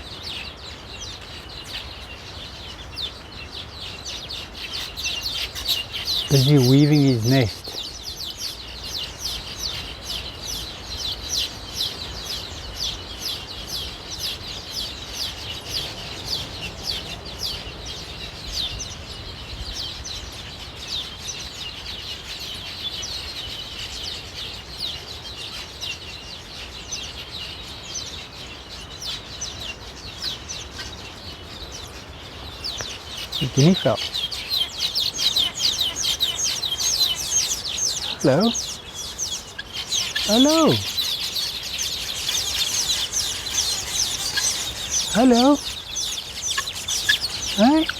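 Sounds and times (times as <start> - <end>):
weaver birds chirping: 0.0 - 47.9.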